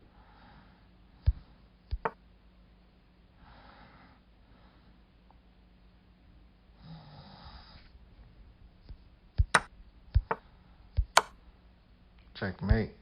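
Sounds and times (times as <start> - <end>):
faint breath: 0.0 - 1.7, 3.3 - 5.1, 6.8 - 8.0
sharp clicks: 11.0 - 11.4.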